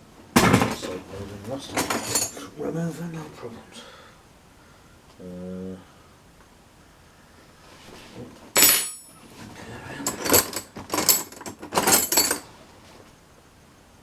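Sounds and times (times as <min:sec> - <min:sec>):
metal hand tools clattering: 0:01.6 - 0:02.5, 0:08.6 - 0:09.2, 0:10.0 - 0:12.5.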